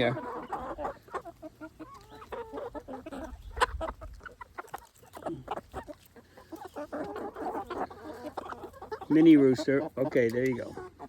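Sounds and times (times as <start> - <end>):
chickens clucking: 0.0 - 11.0.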